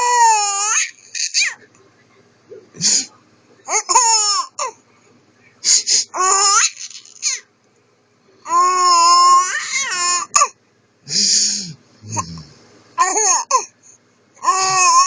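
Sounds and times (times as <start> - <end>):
man sniffling: 11.1 - 12.4.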